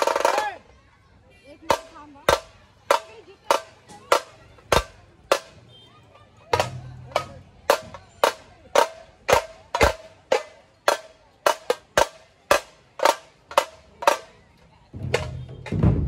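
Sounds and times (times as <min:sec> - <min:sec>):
deep drum thump: 0:15.0 - 0:16.0.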